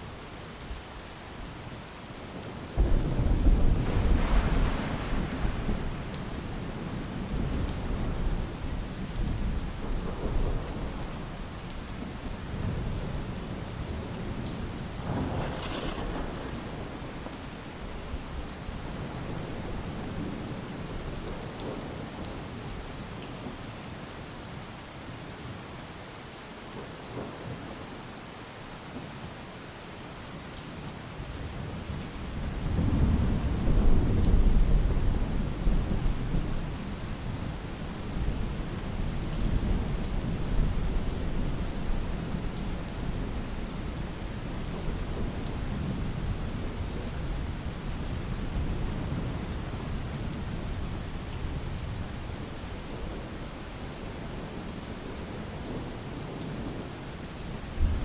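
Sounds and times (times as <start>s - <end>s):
steady rain falling: 0.0s - 58.0s
rolling thunder: 2.8s - 8.5s, 12.5s - 21.4s, 57.7s - 58.0s.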